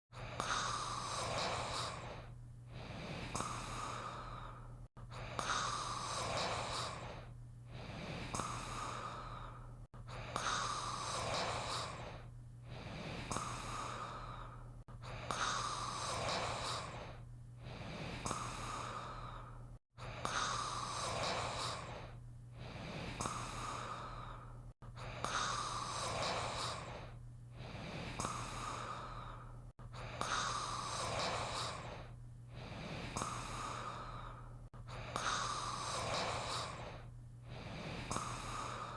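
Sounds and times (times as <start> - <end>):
cartoon snoring: 0.4 - 4.1, 5.3 - 9.2, 10.3 - 14.0, 15.1 - 19.0, 20.2 - 23.9, 25.2 - 28.5, 30.2 - 33.8, 35.0 - 38.9.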